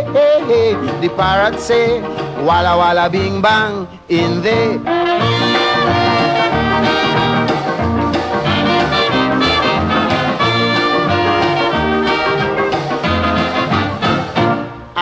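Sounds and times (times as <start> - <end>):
bouncing bass line: 0.0 - 15.0
horn section playing: 4.6 - 15.0.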